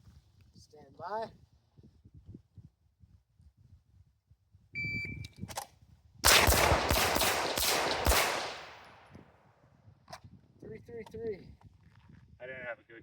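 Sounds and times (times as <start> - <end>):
shot timer beep: 4.8 - 5.3
gunshot echo: 6.2 - 9.2
rapid pistol shots: 6.2 - 9.2.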